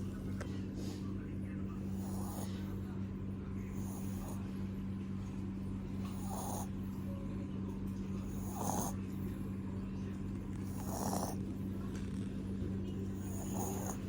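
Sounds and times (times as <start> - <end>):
steady low hum: 0.0 - 14.0
dog snoring: 1.8 - 2.8, 3.6 - 4.6, 5.9 - 7.0, 8.1 - 9.5, 10.3 - 14.0.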